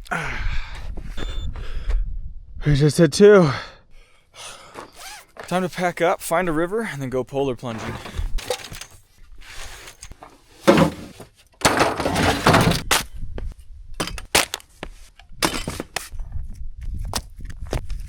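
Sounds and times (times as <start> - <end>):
scraping: 7.7 - 13.0
camping gear clattering: 7.8 - 13.0, 14.0 - 16.1.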